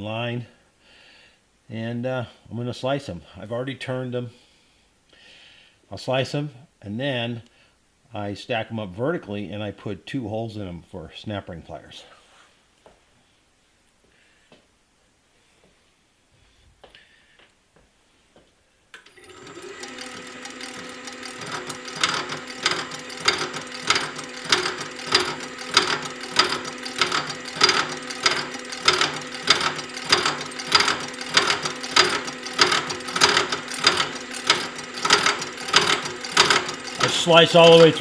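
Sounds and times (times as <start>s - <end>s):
metal-cutting machine humming: 19.2s - 38.0s
sharp regular ticking: 19.6s - 38.0s.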